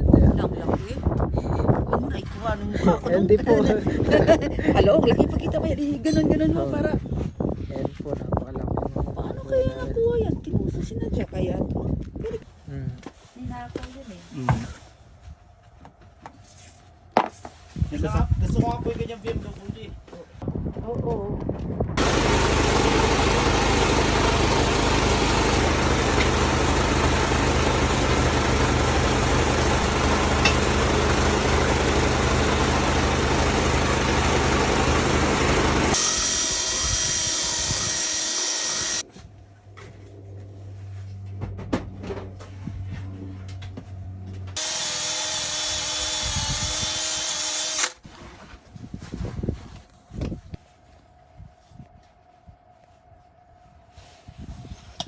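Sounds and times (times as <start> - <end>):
motor-driven tool running: 22.0 - 39.0, 44.6 - 48.0.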